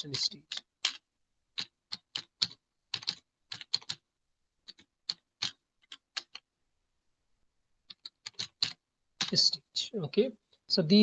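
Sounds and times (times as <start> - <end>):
typing on computer keyboard: 0.1 - 4.0, 4.6 - 6.5, 7.9 - 9.5.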